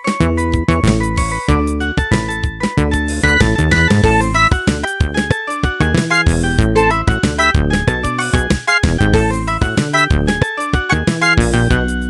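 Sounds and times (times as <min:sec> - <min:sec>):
polyphonic ringtone melody: 0:03.0 - 0:11.9.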